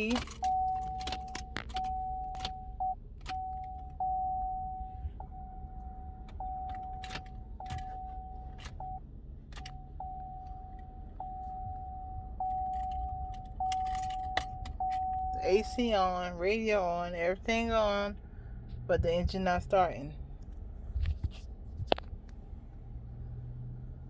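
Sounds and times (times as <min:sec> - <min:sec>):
keys jingling: 0:00.0 - 0:04.0, 0:12.4 - 0:15.3
key clicking in ignition: 0:00.0 - 0:15.9.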